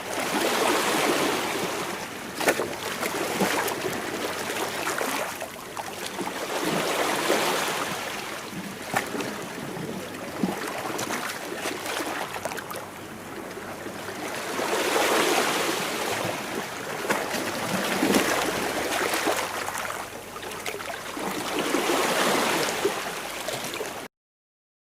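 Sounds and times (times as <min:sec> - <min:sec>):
sea waves washing against rocks: 0:14.3 - 0:23.8.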